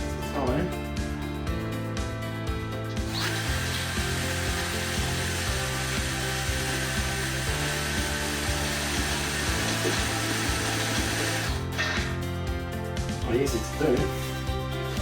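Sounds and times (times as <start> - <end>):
background music: 0.0 - 15.0
power drill boring into metal: 3.1 - 11.6.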